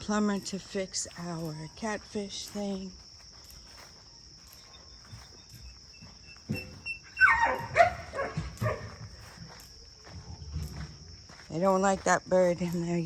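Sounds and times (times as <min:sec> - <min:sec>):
insect chirring: 0:00.0 - 0:13.0
farm animals calling loudly: 0:06.0 - 0:09.2.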